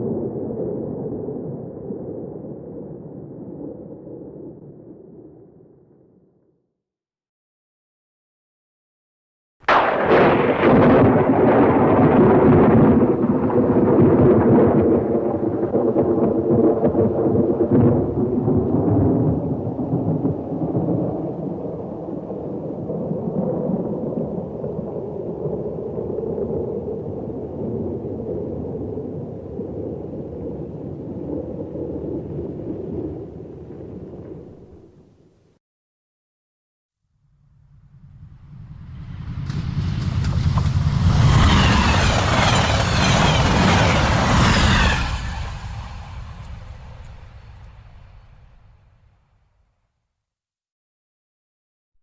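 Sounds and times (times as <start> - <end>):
long rumbling sound effect: 37.5 - 48.8.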